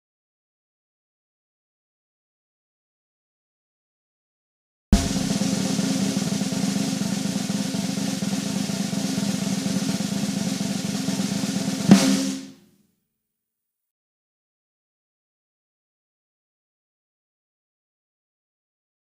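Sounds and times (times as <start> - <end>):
snare drum roll: 5.0 - 12.5.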